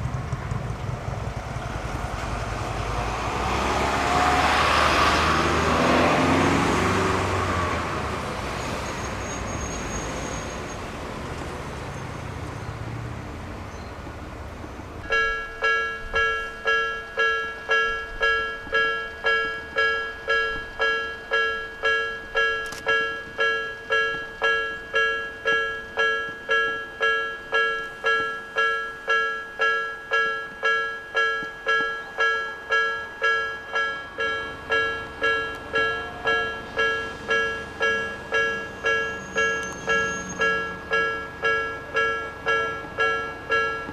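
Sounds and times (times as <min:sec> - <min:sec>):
level crossing warning bell ringing: 0:15.0 - 0:43.9.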